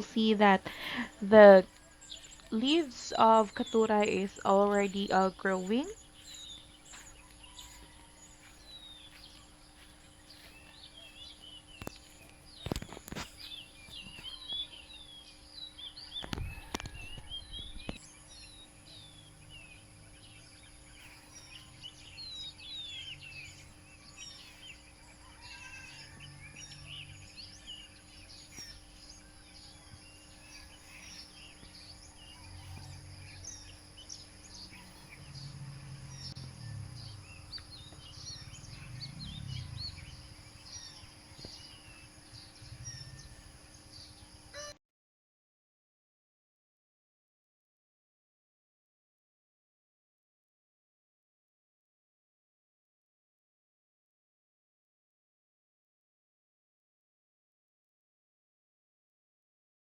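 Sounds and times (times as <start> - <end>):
small birds chirping: 0.0 - 44.8.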